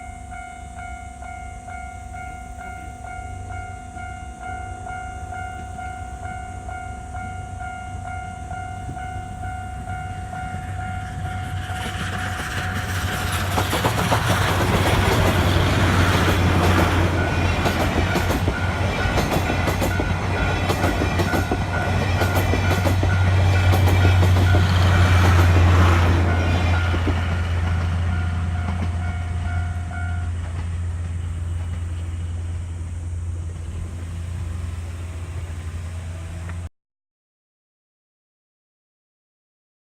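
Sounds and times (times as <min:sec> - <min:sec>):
level-crossing warning bell ringing: 0:00.0 - 0:31.5
steam train passing: 0:00.0 - 0:36.7
train wheels clacking over rail joints: 0:10.4 - 0:32.6.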